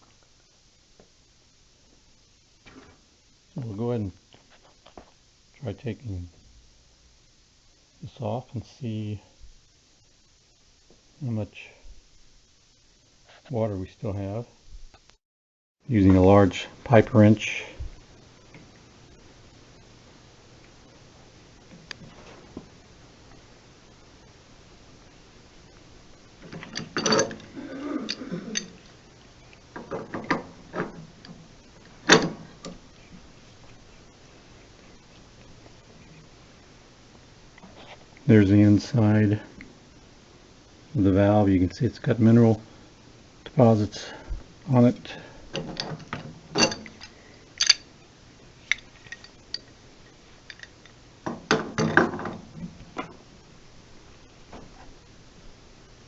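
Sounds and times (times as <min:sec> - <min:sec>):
metal tools clinking: 0:26.5 - 0:28.9, 0:45.5 - 0:47.9, 0:48.7 - 0:49.8
pipe wrench clicking and clanking: 0:45.5 - 0:47.8.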